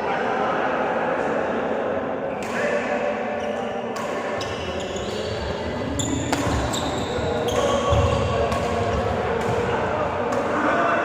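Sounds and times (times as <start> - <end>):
shoe squeaks on floor: 4.4 - 8.3.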